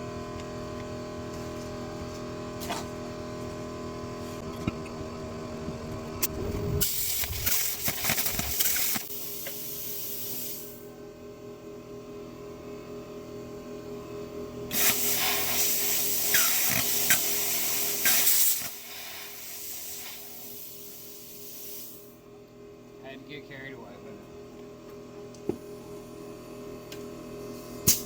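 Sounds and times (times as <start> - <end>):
steady machine hum: 0.0 - 28.0
plasma cutter hissing: 6.2 - 10.8, 14.7 - 22.1.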